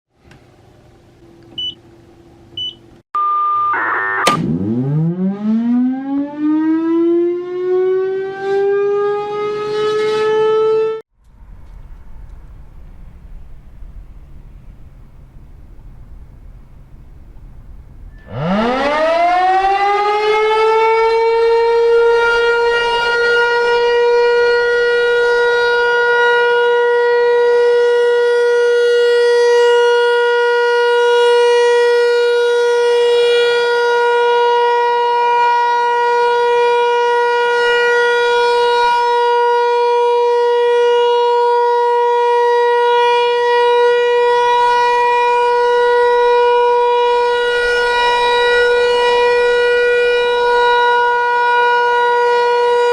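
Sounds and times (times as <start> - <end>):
warning siren winding up: 3.2 - 11.0, 18.0 - 28.8, 42.4 - 52.9.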